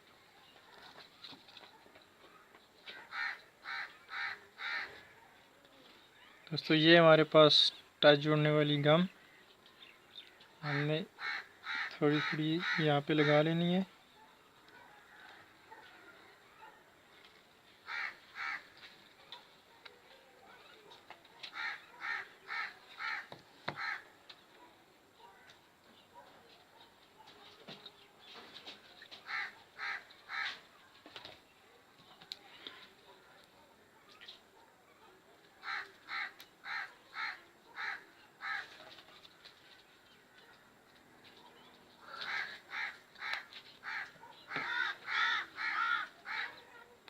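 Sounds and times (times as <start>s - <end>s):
bird cawing: 2.9s - 5.2s, 10.7s - 13.4s, 17.8s - 18.8s, 21.5s - 24.2s, 29.2s - 30.6s, 35.6s - 38.7s, 42.0s - 46.6s.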